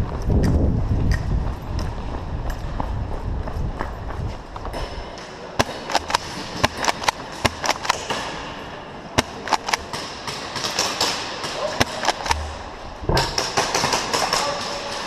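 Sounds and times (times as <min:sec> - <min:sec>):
airsoft gunfire: 0:05.6 - 0:15.0.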